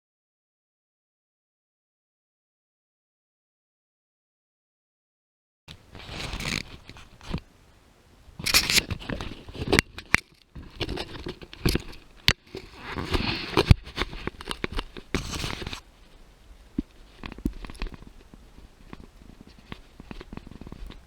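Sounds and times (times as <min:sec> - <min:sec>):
hiking gear clicking: 0:08.4 - 0:21.0.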